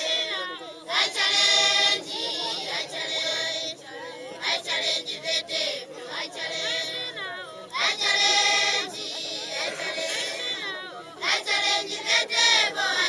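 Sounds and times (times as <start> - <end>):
children singing: 7.8 - 13.0.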